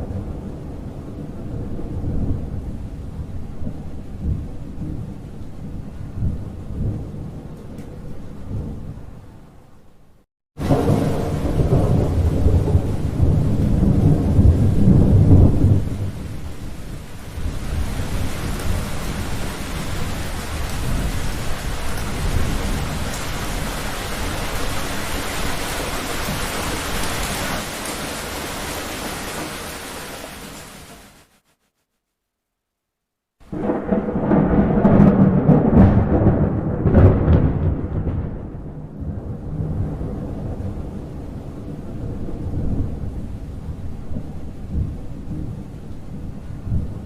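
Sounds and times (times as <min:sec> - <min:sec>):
steady rain: 0:00.0 - 0:31.6, 0:33.4 - 0:47.0
thunder rumbling: 0:10.6 - 0:30.7, 0:33.4 - 0:47.0.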